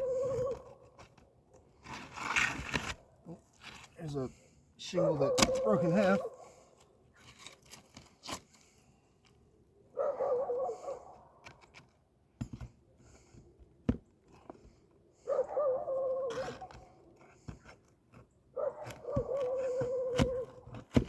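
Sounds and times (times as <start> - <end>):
dog whining: 0.0 - 0.8, 5.0 - 6.3, 15.2 - 16.8, 18.6 - 20.6.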